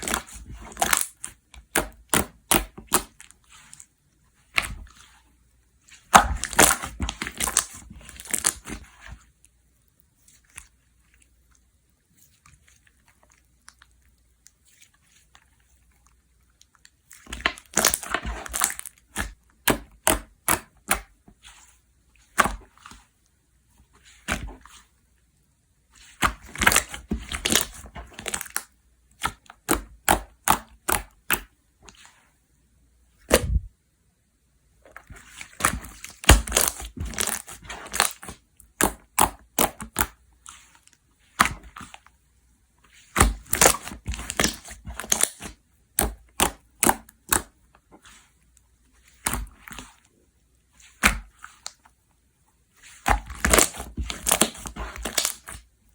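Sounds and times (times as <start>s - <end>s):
slime crackling and popping: 0.0s - 3.2s, 6.1s - 8.8s, 17.2s - 21.1s, 26.1s - 31.5s, 35.5s - 40.2s, 43.1s - 47.5s, 52.9s - 55.6s.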